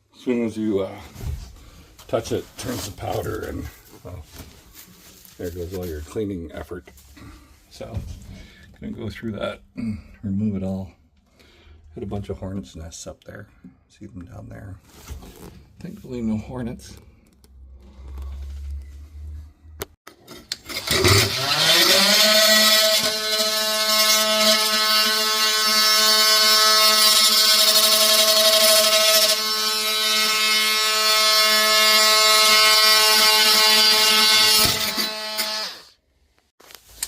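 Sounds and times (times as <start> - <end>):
power tool motor whining: 20.6 - 35.9.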